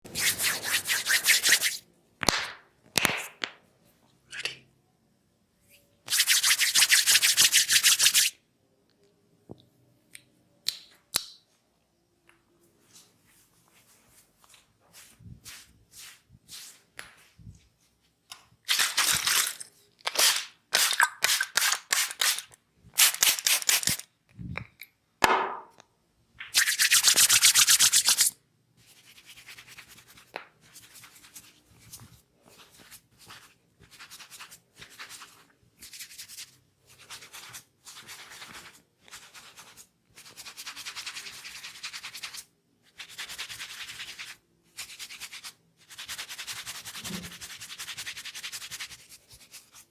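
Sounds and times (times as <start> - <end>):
hands rubbing strokes: 0.1 - 1.8, 6.1 - 8.3, 12.8 - 17.6, 26.6 - 39.8
hands slapping and tapping: 1.2 - 3.6, 25.2 - 27.7.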